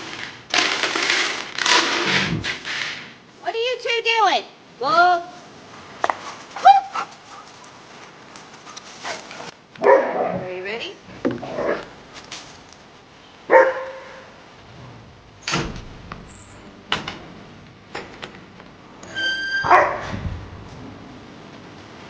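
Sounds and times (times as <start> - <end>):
dog barking: 9.8 - 10.3, 13.5 - 14.3, 19.7 - 20.1.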